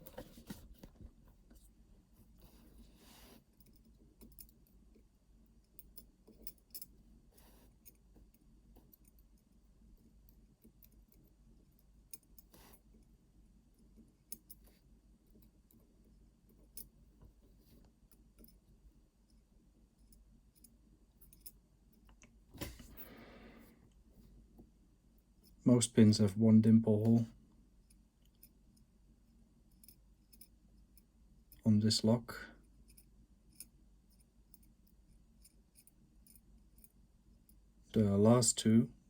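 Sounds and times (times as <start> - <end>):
small metal lock parts clicking: 3.6 - 4.8, 5.7 - 6.9, 20.1 - 21.6, 29.7 - 31.1, 35.4 - 36.9.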